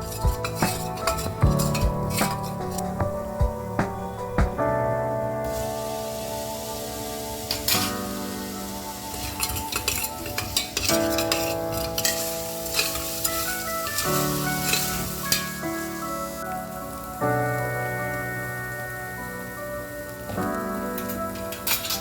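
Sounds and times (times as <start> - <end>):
background music: 0.0 - 22.0
spatula scraping pan: 0.1 - 3.0, 9.2 - 13.1
food sizzling in hot oil: 5.5 - 17.2.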